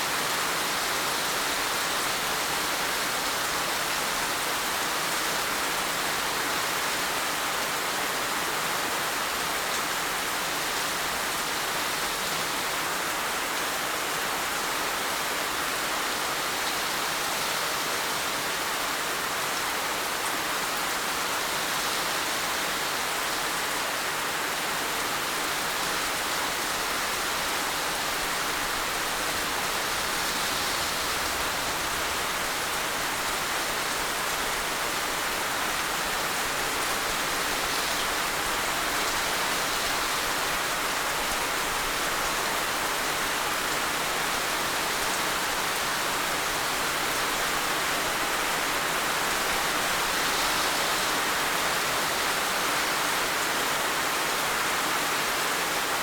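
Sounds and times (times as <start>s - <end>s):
heavy rain falling: 18.1s - 56.0s.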